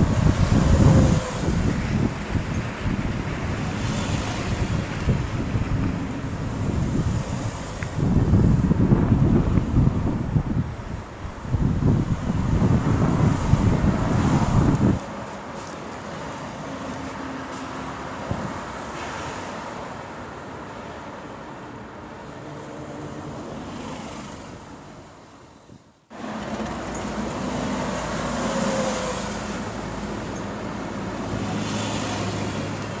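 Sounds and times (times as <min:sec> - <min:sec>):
wind buffeting microphone: 0:00.0 - 0:16.1.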